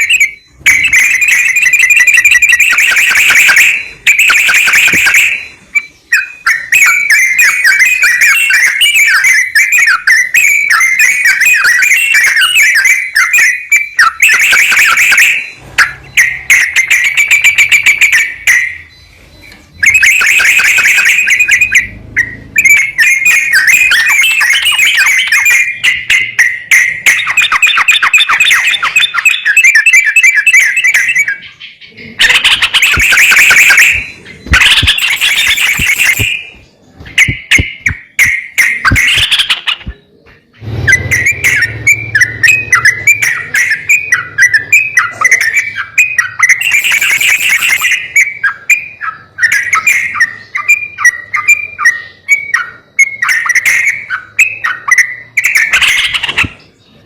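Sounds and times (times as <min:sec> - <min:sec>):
bird chattering song: 0:00.0 - 0:57.0.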